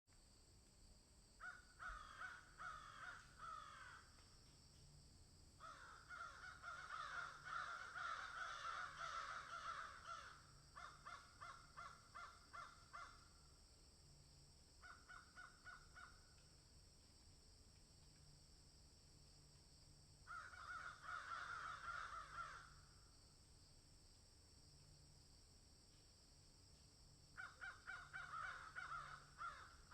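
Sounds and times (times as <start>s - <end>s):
crows cawing: 1.4s - 4.2s, 5.6s - 13.3s, 14.8s - 16.3s, 20.3s - 22.9s, 27.4s - 29.9s.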